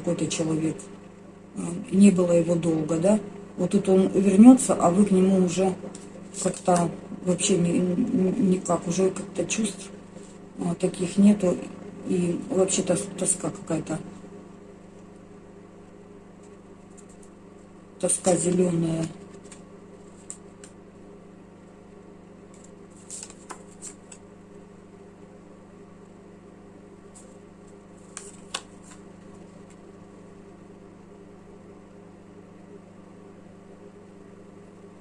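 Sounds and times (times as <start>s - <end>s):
low room hum: 0.0s - 35.0s
cards clicking and rustling: 18.2s - 20.8s, 22.5s - 24.2s, 27.1s - 29.8s.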